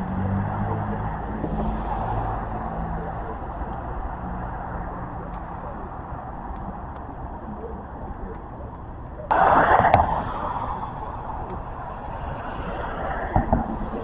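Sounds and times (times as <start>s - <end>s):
road traffic rushing: 0.0s - 14.0s
vehicle engine humming: 0.0s - 14.0s.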